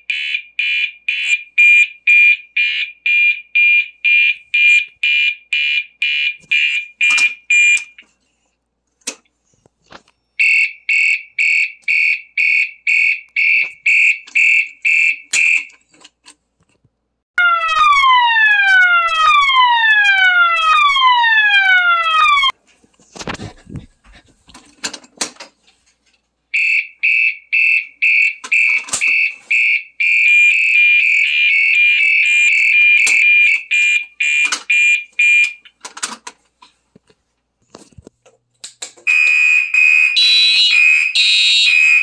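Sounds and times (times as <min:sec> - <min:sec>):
pulsing fire alarm horn: 0:10.4 - 0:15.7, 0:17.4 - 0:22.5, 0:26.6 - 0:35.6, 0:39.1 - 0:42.0
falling sweep alarm tone: 0:17.4 - 0:22.5, 0:39.1 - 0:42.0.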